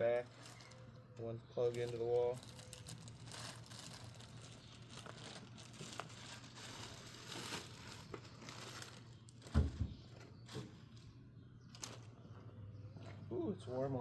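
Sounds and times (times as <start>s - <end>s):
packaging crinkling and rustling: 0.2s - 1.0s, 1.6s - 10.8s.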